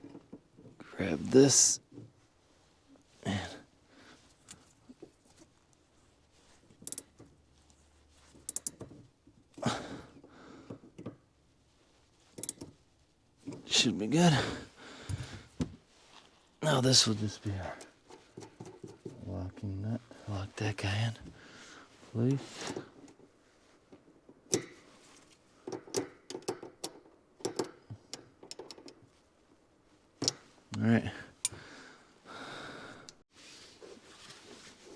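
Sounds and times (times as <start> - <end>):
hand tools clicking and knocking: 0.0 - 0.8, 6.8 - 7.3, 8.3 - 11.2, 12.4 - 12.8, 17.7 - 19.2, 23.9 - 24.9, 25.6 - 29.1
wrench clicking on metal nut: 6.8 - 7.2, 8.4 - 8.8, 12.4 - 12.7, 25.8 - 29.0.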